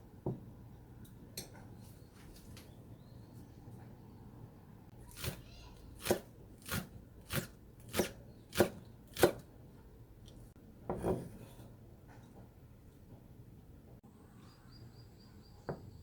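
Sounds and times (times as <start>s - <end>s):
knife chopping on cutting board: 5.1s - 5.4s, 6.0s - 9.4s, 10.9s - 11.6s.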